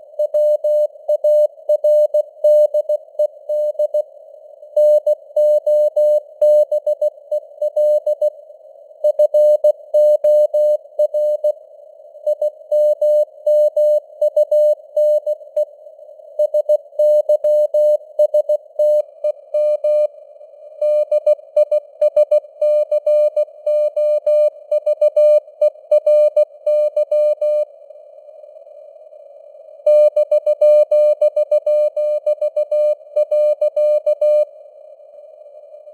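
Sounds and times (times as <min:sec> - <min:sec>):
faint radio hiss: 0:00.0 - 0:10.0, 0:10.6 - 0:17.2, 0:17.8 - 0:31.2, 0:31.8 - 0:35.9.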